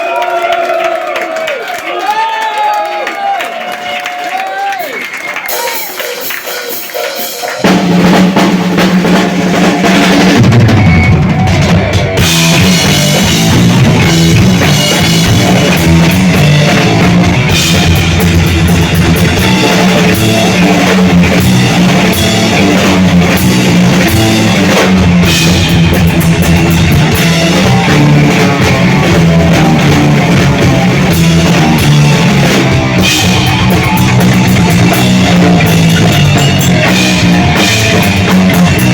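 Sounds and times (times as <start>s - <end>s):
pounding drum kit: 4.4s - 38.9s
heavy metal band playing: 5.4s - 38.9s
distorted guitar riff: 9.9s - 38.9s.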